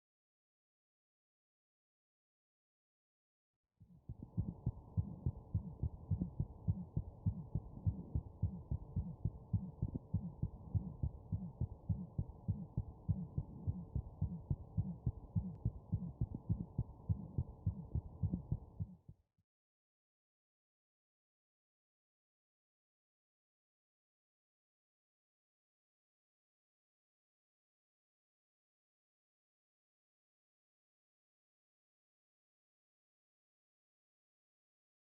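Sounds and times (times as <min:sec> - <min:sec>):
muffled heartbeat thuds: 0:04.0 - 0:19.0.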